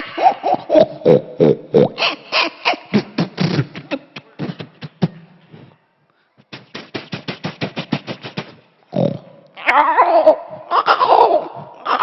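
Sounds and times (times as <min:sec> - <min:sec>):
man beatboxing clicks: 0:03.0 - 0:05.3, 0:06.5 - 0:09.6.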